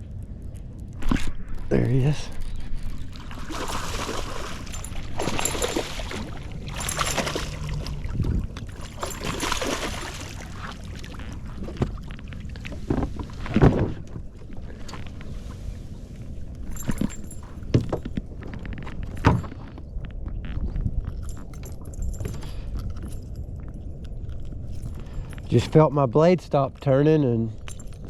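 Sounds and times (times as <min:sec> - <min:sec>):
water splashing and rushing: 0:02.8 - 0:12.7
knocks and thumps on boat: 0:12.7 - 0:14.4, 0:16.6 - 0:19.9.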